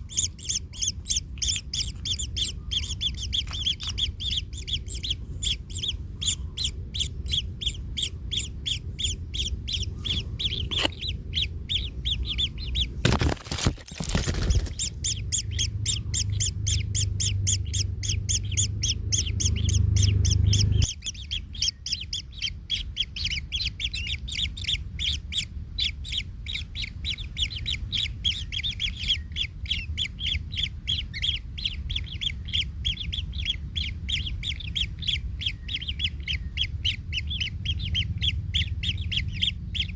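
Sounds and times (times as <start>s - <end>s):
kingfisher nestlings calling: 0.0s - 39.9s
low rumble: 0.0s - 39.9s
rustling clatter: 13.0s - 14.9s.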